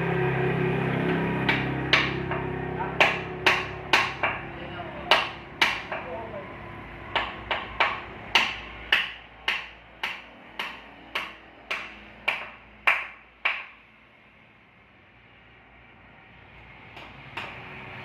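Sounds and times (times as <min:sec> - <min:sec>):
hammer striking: 0:01.0 - 0:06.2, 0:07.1 - 0:13.8, 0:16.9 - 0:17.8.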